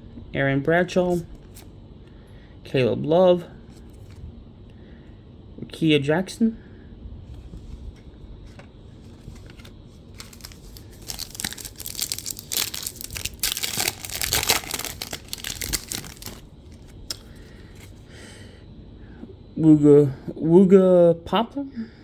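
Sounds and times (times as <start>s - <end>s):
card pack wrapper tearing and crinkling: 9.2s - 17.3s.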